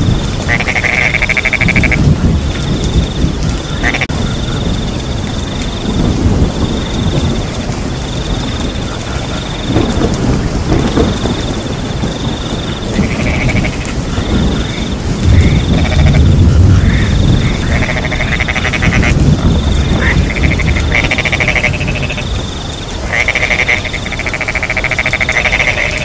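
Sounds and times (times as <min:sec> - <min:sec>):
cricket trilling: 0:00.0 - 0:26.0
frogs calling: 0:00.0 - 0:26.0
rain falling: 0:00.0 - 0:26.0
thunder rumbling: 0:00.0 - 0:26.0.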